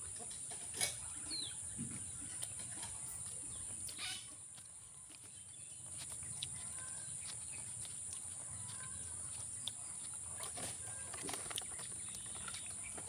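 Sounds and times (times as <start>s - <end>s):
bird chirps: 5.0s - 13.0s.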